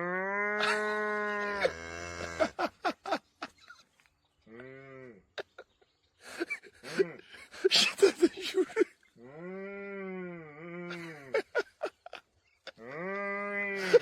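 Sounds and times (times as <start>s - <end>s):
farm animal bleating: 0.6s - 2.6s.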